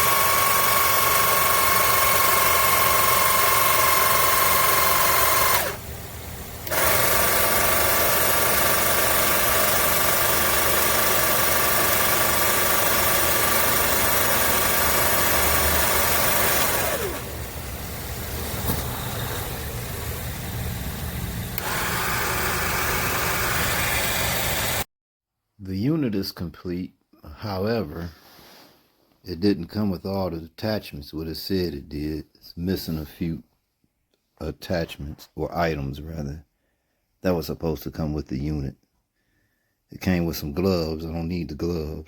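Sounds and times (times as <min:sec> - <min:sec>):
electric motor whining: 0:00.0 - 0:24.9.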